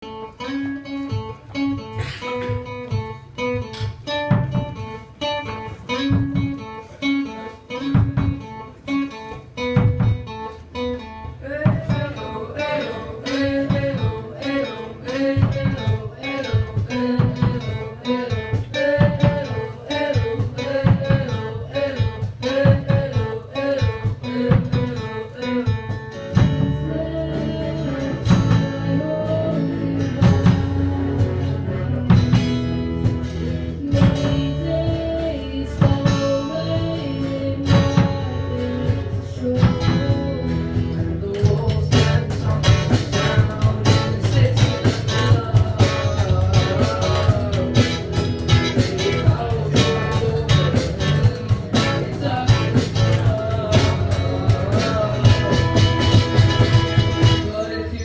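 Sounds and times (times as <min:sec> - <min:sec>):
guitar picking a repeating figure: 0:00.0 - 0:58.0
live band music: 0:00.0 - 0:58.0
person singing: 0:10.9 - 0:58.0.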